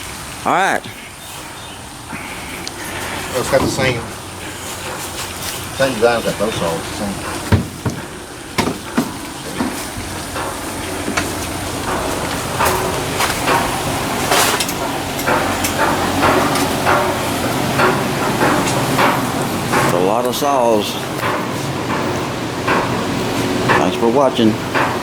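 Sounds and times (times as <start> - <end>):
knocks and clatter: 6.3 - 25.0.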